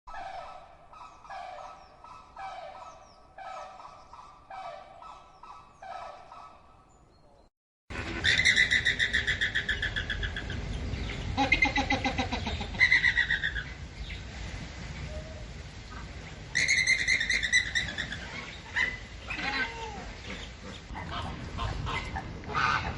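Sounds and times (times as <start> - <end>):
flamingos honking: 7.9 - 13.8, 15.8 - 22.9.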